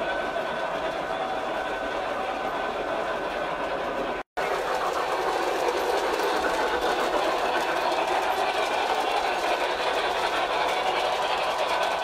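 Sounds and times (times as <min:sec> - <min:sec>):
wheels rolling on rails: 0:00.0 - 0:12.0
model train motor whirring: 0:04.4 - 0:12.0.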